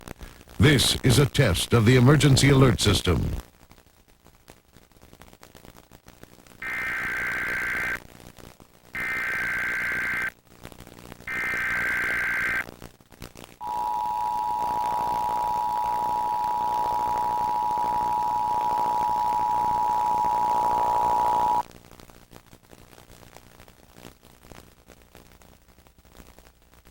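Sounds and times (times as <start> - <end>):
two-tone attention signal: 13.6 - 21.6
warbling digital data tones: 13.6 - 21.6.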